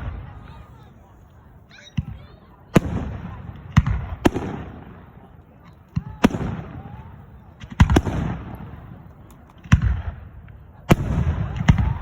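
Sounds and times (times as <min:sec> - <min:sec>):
fireworks bangs with rumble: 0:02.0 - 0:05.2, 0:05.9 - 0:09.0, 0:09.6 - 0:12.0.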